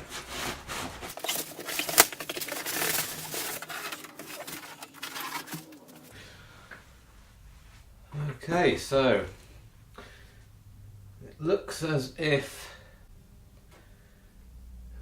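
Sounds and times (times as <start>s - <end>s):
polystyrene scraping and rustling: 0.0s - 6.2s
polystyrene cracking: 1.1s - 6.1s.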